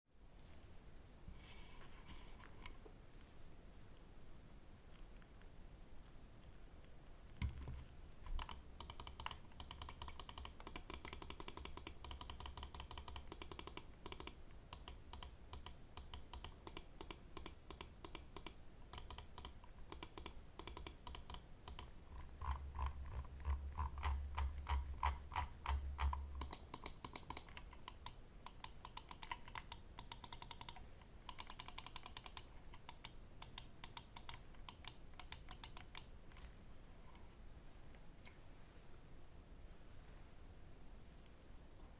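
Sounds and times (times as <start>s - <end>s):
mouse clicking: 8.2s - 36.6s.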